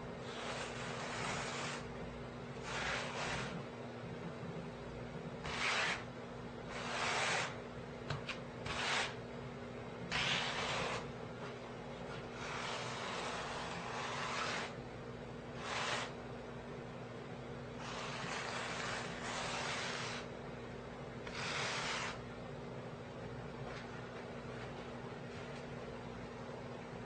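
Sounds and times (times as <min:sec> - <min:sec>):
steady low hum: 0:00.0 - 0:27.0
trowel scraping mortar: 0:00.2 - 0:01.9, 0:02.6 - 0:03.6, 0:05.4 - 0:06.1, 0:06.7 - 0:07.6, 0:08.6 - 0:09.2, 0:10.1 - 0:11.1, 0:12.4 - 0:14.8, 0:15.6 - 0:16.2, 0:17.8 - 0:20.3, 0:21.3 - 0:22.2.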